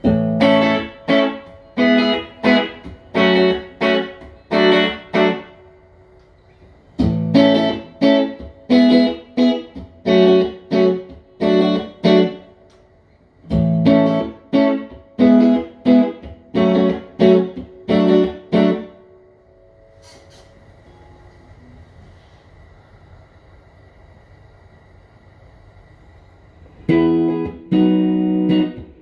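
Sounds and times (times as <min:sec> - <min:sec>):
clean electric guitar chords: 0:00.0 - 0:06.2, 0:07.0 - 0:12.8, 0:13.4 - 0:20.9, 0:26.8 - 0:29.0.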